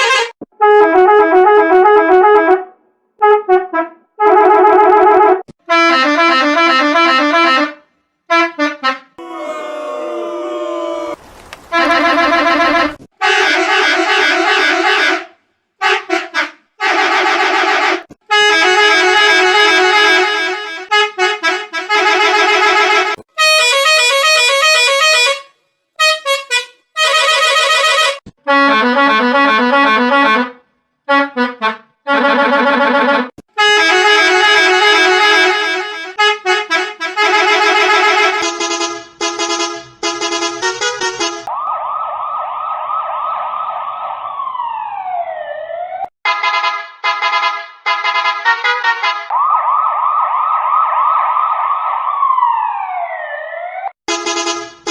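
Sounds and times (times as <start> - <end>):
bus horn blasts: 0.0 - 28.6, 33.0 - 41.5, 46.3 - 49.3, 54.1 - 54.9
wavering siren-like tone: 9.2 - 11.2.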